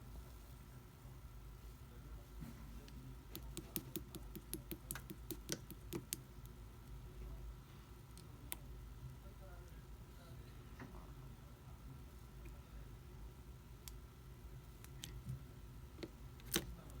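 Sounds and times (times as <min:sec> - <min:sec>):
slime clicking and popping: 0:03.3 - 0:06.6.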